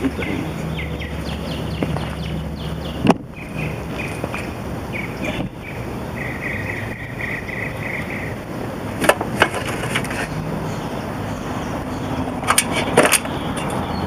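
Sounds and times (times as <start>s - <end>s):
rapid pulsing chirp: 0.1s - 8.5s
sharp clicks and knocks: 9.0s - 10.3s, 12.4s - 13.8s.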